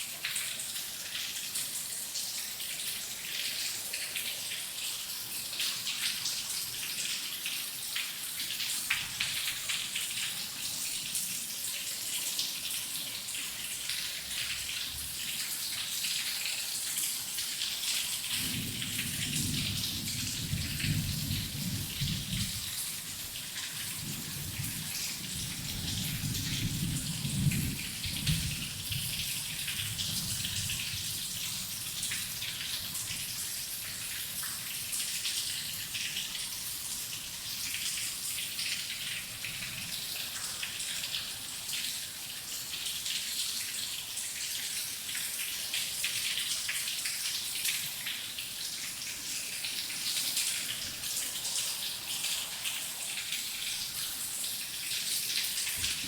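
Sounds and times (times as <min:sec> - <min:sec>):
heavy rain: 0:12.8 - 0:41.8, 0:43.9 - 0:56.0
low rolling thunder: 0:18.4 - 0:22.8, 0:24.0 - 0:31.2.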